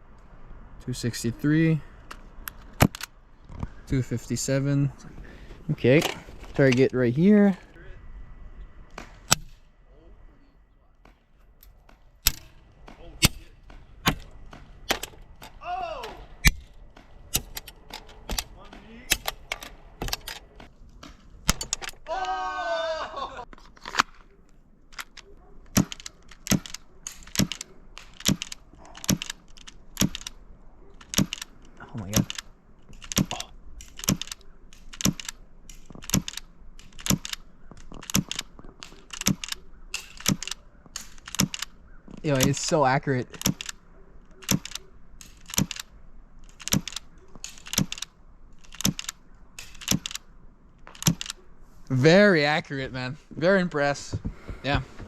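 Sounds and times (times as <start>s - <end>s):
airsoft pistol firing clicks: 25.0s - 30.4s, 44.4s - 45.9s.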